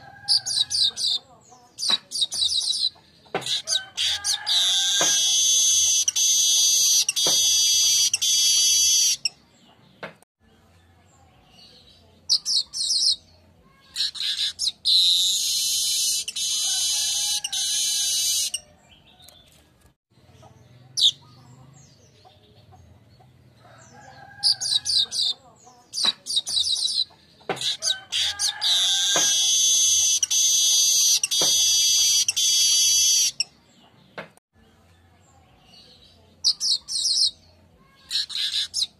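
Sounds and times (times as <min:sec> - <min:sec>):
weaver bird buzzy song: 0:04.6 - 0:09.5, 0:11.4 - 0:19.7, 0:28.4 - 0:34.2.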